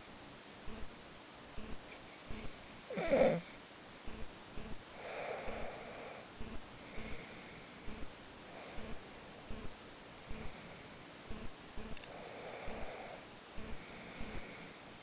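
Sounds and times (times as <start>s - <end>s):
person snoring: 2.3s - 3.6s, 5.0s - 6.3s, 12.0s - 14.8s
faint regular clicking: 11.3s - 12.9s.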